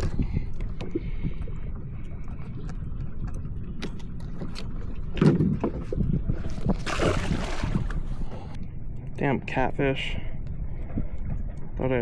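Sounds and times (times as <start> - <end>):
wind rumble on microphone: 0.0 - 12.0
clicks and knocks on a kayak: 2.6 - 6.8.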